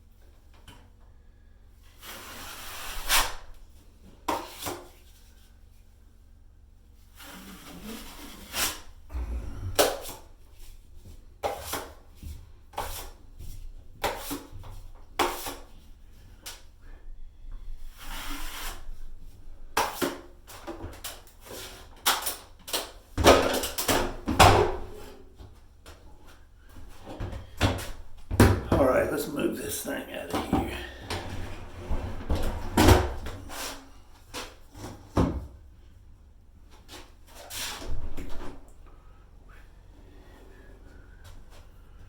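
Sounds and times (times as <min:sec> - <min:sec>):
drywall knife scraping compound: 0:01.9 - 0:03.6, 0:07.1 - 0:10.2, 0:14.0 - 0:16.6, 0:17.8 - 0:19.0, 0:30.3 - 0:35.0.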